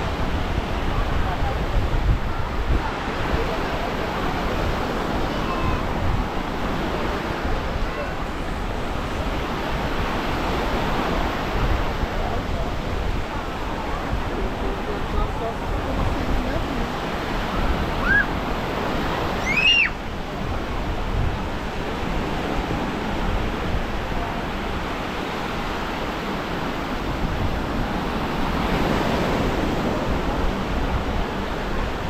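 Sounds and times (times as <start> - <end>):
surf washing onto beach: 0.0 - 32.0
wind on microphone: 0.0 - 32.0
high rising and falling calls: 19.4 - 20.0.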